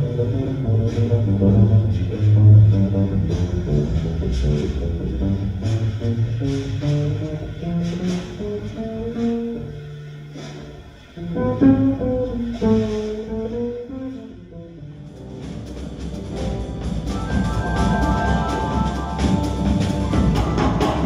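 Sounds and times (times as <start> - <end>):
bass notes: 0.0 - 21.0
jazz guitar melody: 0.0 - 21.0
light percussion: 15.1 - 21.0.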